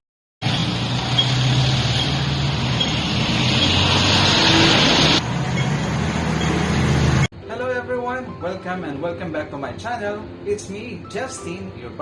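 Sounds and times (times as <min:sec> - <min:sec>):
vehicle engines humming: 0:00.4 - 0:07.3.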